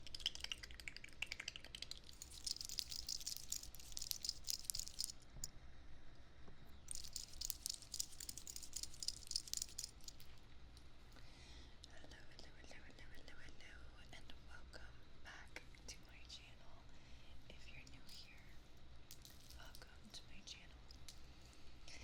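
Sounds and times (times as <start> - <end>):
crisp crackling and clicking: 0.1 - 5.3, 6.9 - 10.9.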